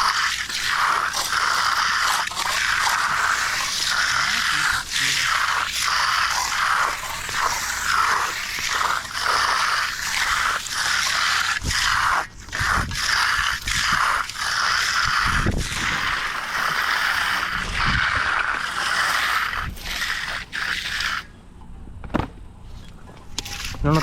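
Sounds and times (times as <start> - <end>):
tool scraping wet concrete: 0.0 - 21.3, 22.7 - 24.0
dull thumps: 22.0 - 22.5.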